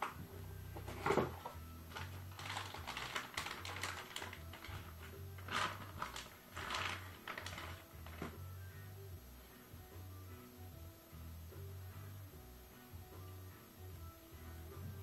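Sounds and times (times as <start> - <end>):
cardboard and plastic packaging crackling: 0.8 - 8.4
music with pulsing bass: 6.7 - 15.0.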